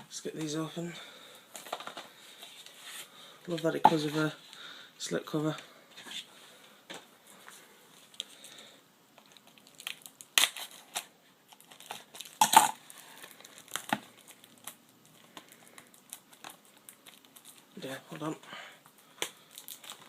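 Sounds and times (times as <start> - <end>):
plastic wrap crinkling and tearing: 9.2 - 18.3, 18.9 - 20.0.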